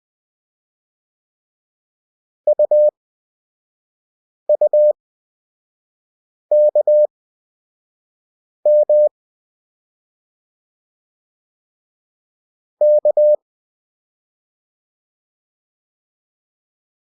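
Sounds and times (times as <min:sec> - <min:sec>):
morse code beeps: 0:02.5 - 0:02.9, 0:04.5 - 0:04.9, 0:06.5 - 0:07.1, 0:08.7 - 0:09.1, 0:12.8 - 0:13.4.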